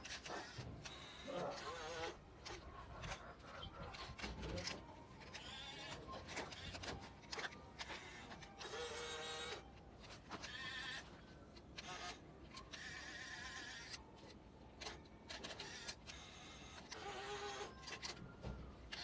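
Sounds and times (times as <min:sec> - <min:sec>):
toy motor whirring: 0:00.0 - 0:19.0.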